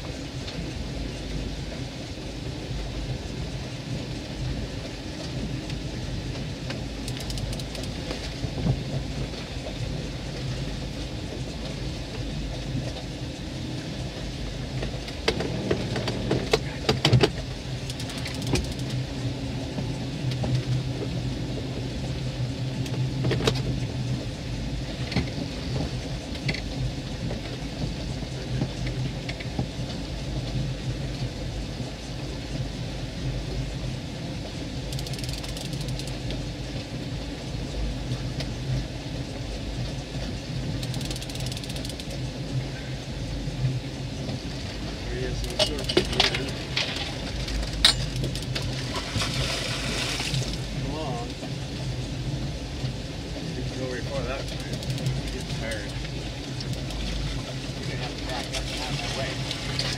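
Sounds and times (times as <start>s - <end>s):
boat engine running: 0.0s - 59.9s
rushing wind and water: 0.0s - 59.9s
sharp clicks and knocks: 6.7s - 8.3s, 14.8s - 19.0s, 34.9s - 36.3s, 40.8s - 42.2s, 45.4s - 48.7s, 54.4s - 57.2s.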